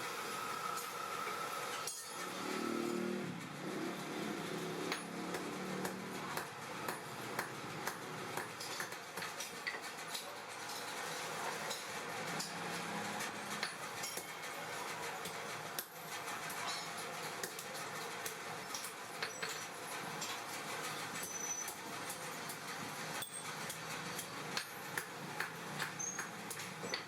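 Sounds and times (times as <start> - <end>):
hammer tapping metal on anvil: 4.9 - 9.9, 23.2 - 27.0.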